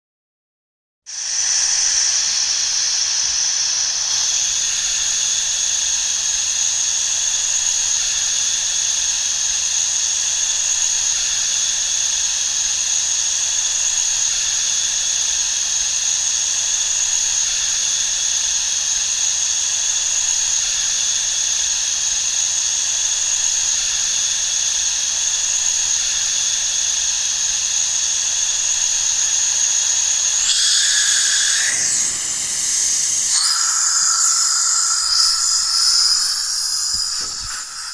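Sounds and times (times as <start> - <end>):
air hissing from tyre: 30.4 - 37.9.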